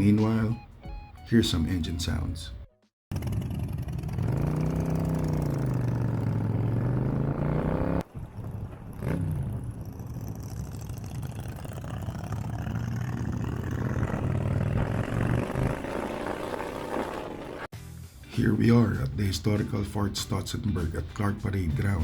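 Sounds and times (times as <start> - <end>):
vehicle engine running: 3.1 - 17.7.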